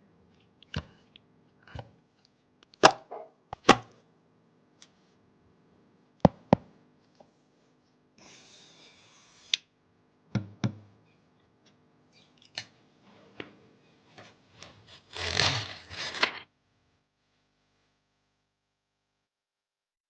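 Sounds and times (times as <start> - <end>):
rustling scrape: 14.5 - 16.4.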